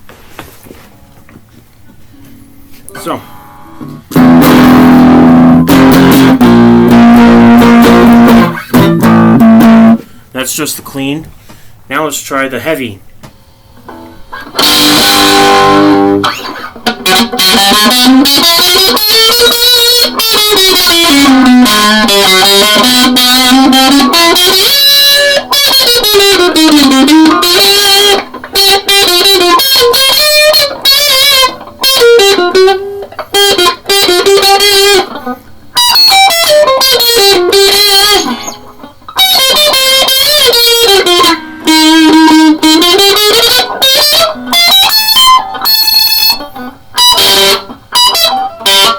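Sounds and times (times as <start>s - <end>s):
distorted electric guitar lead: 2.2s - 10.2s, 13.6s - 48.9s.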